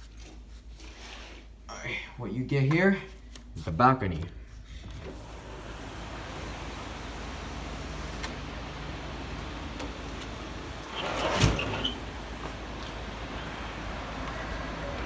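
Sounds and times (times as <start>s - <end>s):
sliding door rolling open: 4.9s - 15.0s.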